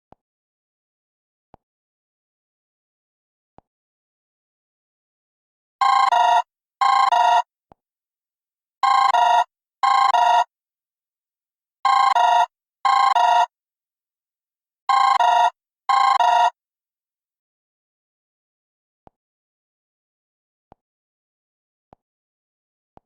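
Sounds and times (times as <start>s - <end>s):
phone ringtone double ring: 5.8s - 7.5s, 8.8s - 10.5s, 11.9s - 13.5s, 14.9s - 16.6s.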